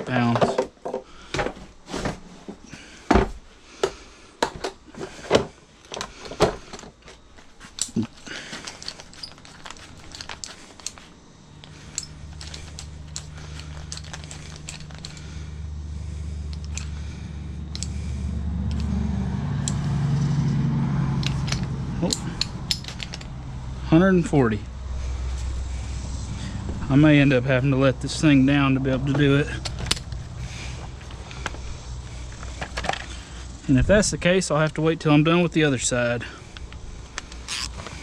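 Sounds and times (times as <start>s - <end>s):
steady low hum: 0.0s - 38.0s
metal clicks and tool knocks: 16.5s - 17.0s, 17.7s - 18.0s, 21.2s - 23.3s
torque wrench ratcheting: 37.2s - 37.8s.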